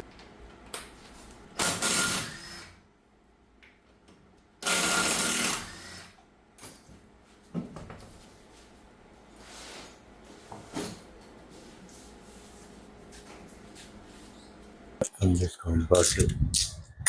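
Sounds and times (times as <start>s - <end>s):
power tool running: 1.6s - 2.7s, 4.6s - 6.2s.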